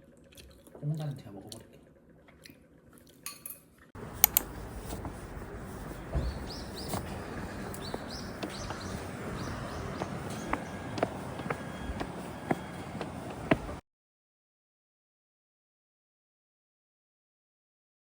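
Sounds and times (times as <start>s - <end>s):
dishes and cutlery clinking: 3.3s - 3.8s
steady background hum: 4.0s - 13.8s.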